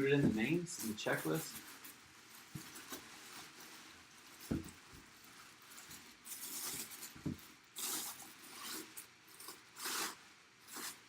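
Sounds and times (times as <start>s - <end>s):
handling rustling: 0.0s - 11.0s
handling thumps: 4.4s - 4.8s.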